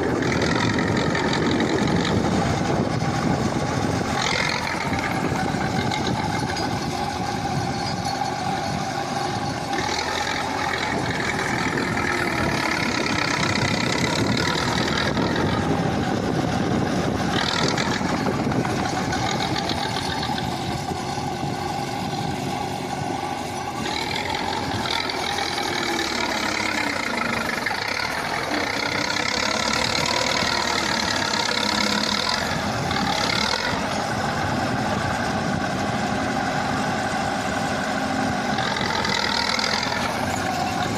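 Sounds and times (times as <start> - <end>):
bulldozer diesel engine running: 0.0 - 40.9.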